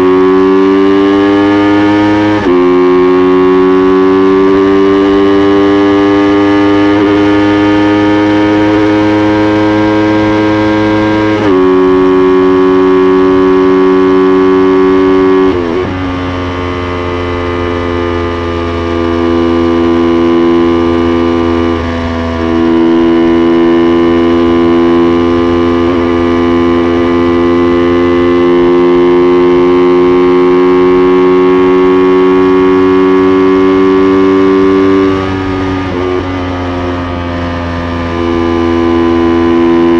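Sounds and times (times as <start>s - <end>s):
motorcycle engine revving high: 0.0s - 39.9s.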